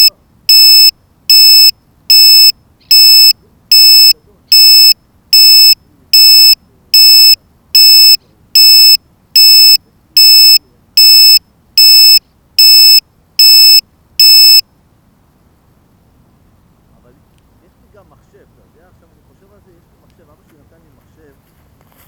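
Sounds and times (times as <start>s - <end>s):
electronic buzzer beeping: 0.0s - 14.6s.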